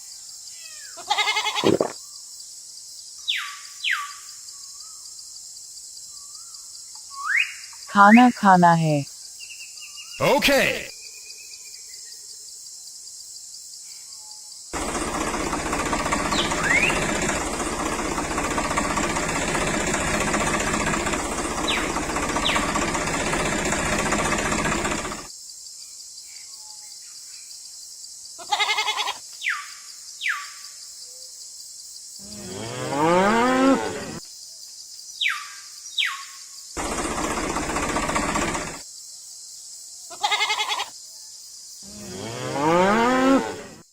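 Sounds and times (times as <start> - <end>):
loud steady noise: 14.8 - 25.3
cow mooing: 32.3 - 34.2, 42.0 - 43.8.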